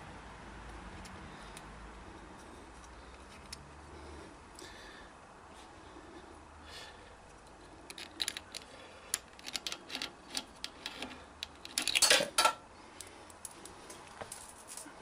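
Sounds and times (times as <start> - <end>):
metal parts and tools clinking: 7.9 - 12.6.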